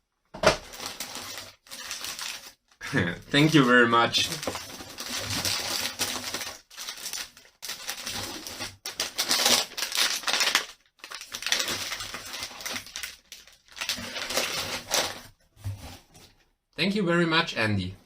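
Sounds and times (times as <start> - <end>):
packaging crinkling: 0.6 - 2.8, 3.4 - 15.3.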